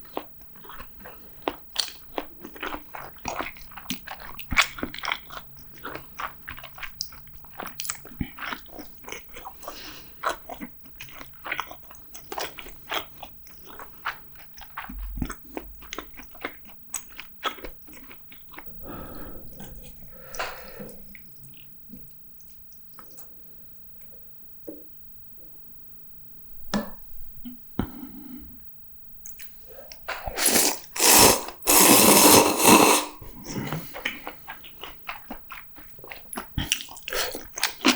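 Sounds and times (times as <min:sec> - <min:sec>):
mouth chewing and biting food: 0:00.0 - 0:18.8, 0:29.3 - 0:37.9.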